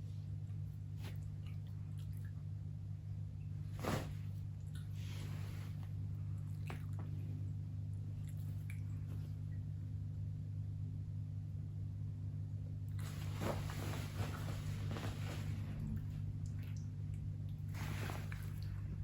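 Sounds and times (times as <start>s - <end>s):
steady low hum: 0.0s - 19.0s
rustling shuffle: 3.6s - 7.3s, 13.0s - 16.4s, 17.6s - 19.0s.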